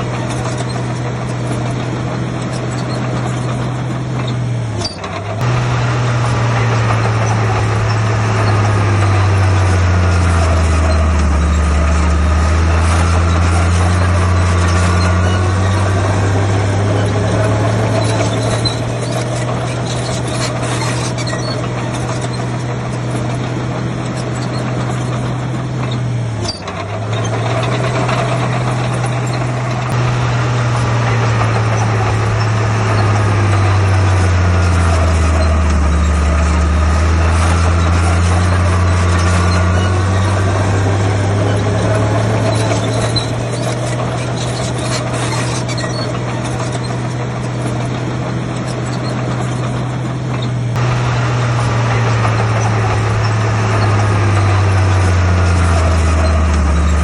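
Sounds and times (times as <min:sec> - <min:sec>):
heavy diesel engine droning: 0:00.0 - 0:57.0.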